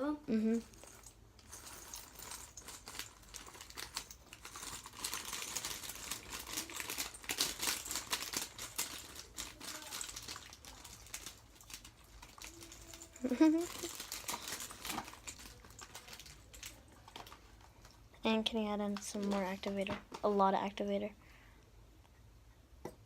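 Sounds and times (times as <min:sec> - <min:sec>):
slime clicking and crackling: 0:02.7 - 0:17.4.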